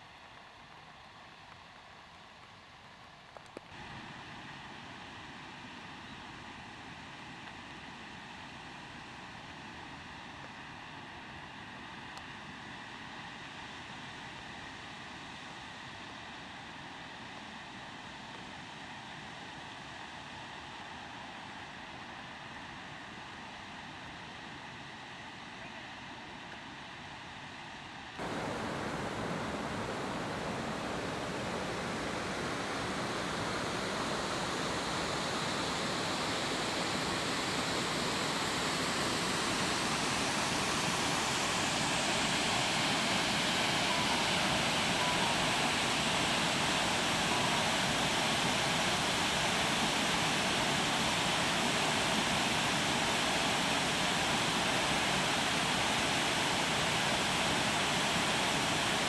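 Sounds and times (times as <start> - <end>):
heavy rain pouring: 28.2 - 40.3.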